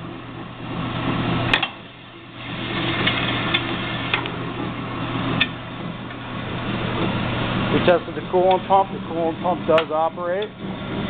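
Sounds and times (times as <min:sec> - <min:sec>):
band saw humming: 0:00.0 - 0:11.0.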